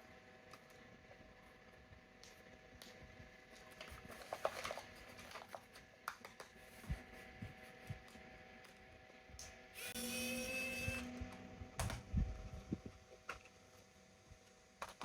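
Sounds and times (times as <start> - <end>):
plastic packaging rustling: 3.6 - 6.8.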